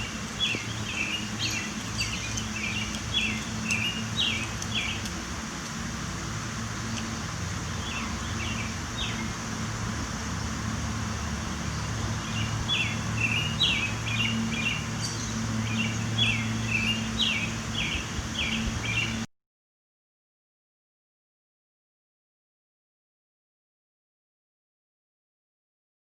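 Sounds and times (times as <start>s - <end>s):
bird chirps: 0.0s - 5.1s, 7.8s - 9.3s, 11.7s - 19.2s
steady low hum: 0.0s - 19.3s.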